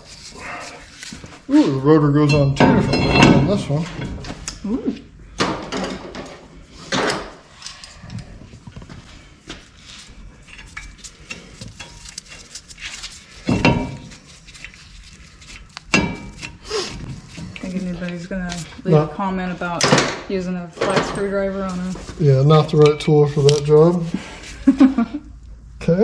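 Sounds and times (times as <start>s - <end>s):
metal clanks and scraping: 2.1s - 4.4s, 10.4s - 14.8s, 15.5s - 18.6s.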